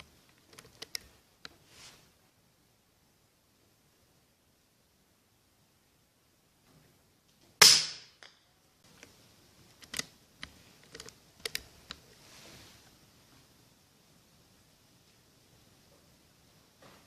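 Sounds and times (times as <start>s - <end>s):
air rifle shot crack: 7.6s - 8.2s.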